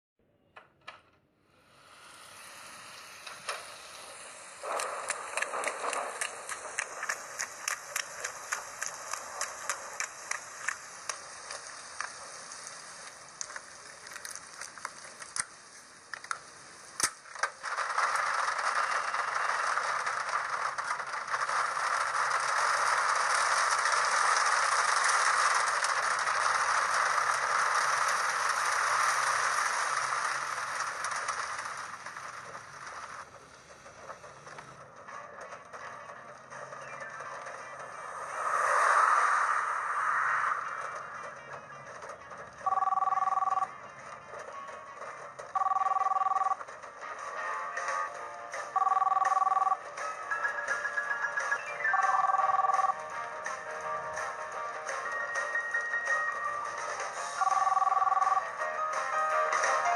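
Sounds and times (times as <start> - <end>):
steady loud hiss: 1.5 - 34.8, 37.6 - 41.5.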